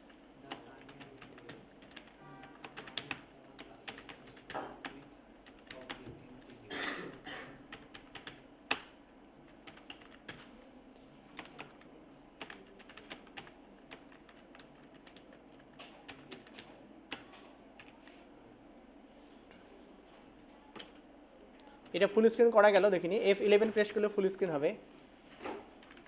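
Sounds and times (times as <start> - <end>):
computer keyboard typing: 0.5 - 6.1, 7.7 - 10.5, 11.4 - 18.0, 25.8 - 26.0.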